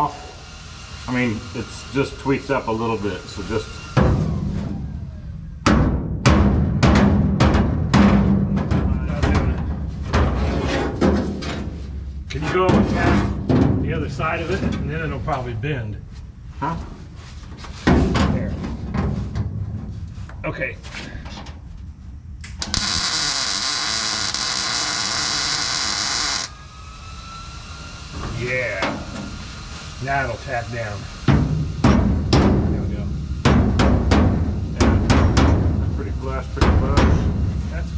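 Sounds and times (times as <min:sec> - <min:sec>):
welding arc sizzling: 0:00.0 - 0:03.7, 0:22.5 - 0:26.6
welding arc crackles: 0:22.5 - 0:26.6.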